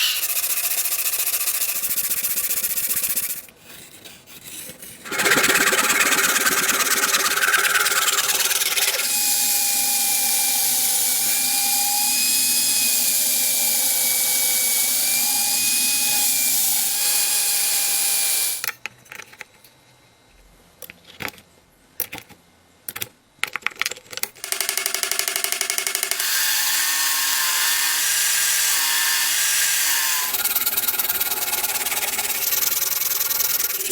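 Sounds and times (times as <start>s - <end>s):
power tool whining under load: 5.1s - 18.7s, 24.4s - 33.9s.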